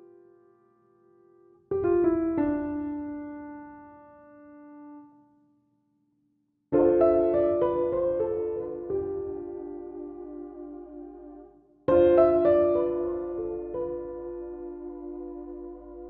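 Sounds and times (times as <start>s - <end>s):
slow solo piano music: 1.7s - 5.1s, 6.8s - 16.0s.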